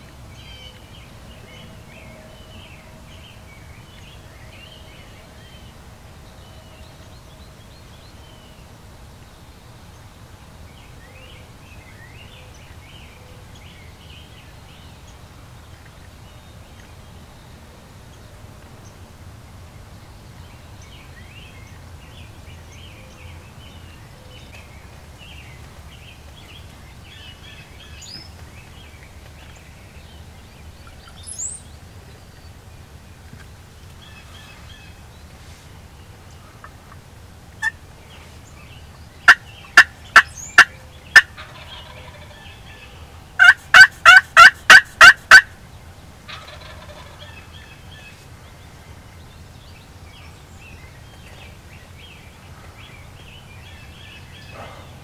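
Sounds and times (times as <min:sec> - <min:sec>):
faint songbird chirps: 0:19.6 - 0:55.0
turkey clucks and yelps: 0:39.3 - 0:42.7, 0:43.4 - 0:45.5, 0:46.3 - 0:47.4.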